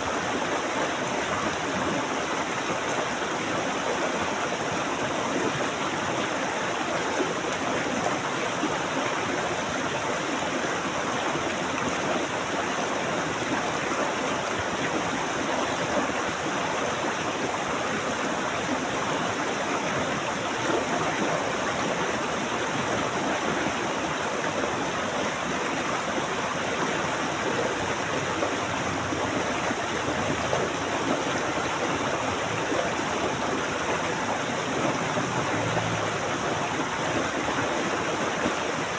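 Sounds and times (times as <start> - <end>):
stream flowing over rocks: 0.0 - 38.9.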